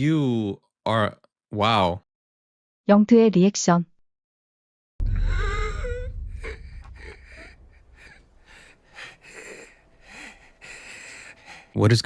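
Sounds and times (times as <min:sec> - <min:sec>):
low rumble: 0:05.0 - 0:10.8
man gasping and wheezing: 0:05.0 - 0:11.8.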